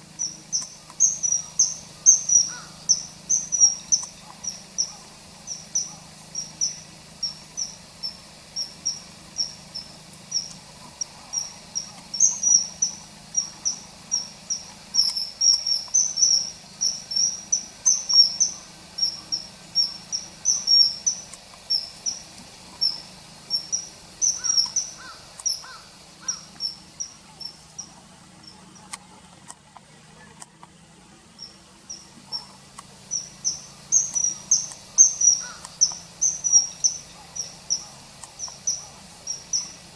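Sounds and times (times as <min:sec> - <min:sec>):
kingfisher calling: 0:00.0 - 0:28.9, 0:31.3 - 0:39.9
faint low hum: 0:00.0 - 0:39.9.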